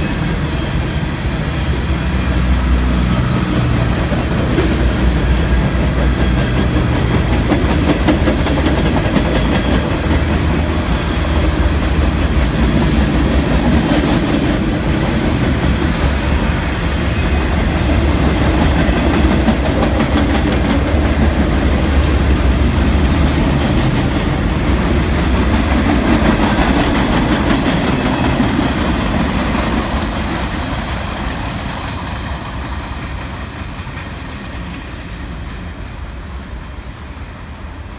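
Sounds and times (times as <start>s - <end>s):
freight train rolling past: 0.0s - 37.9s.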